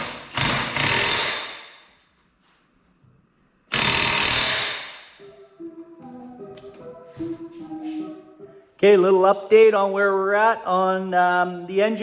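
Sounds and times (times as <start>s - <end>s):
air tool bursts: 0.0s - 1.7s, 3.7s - 5.1s.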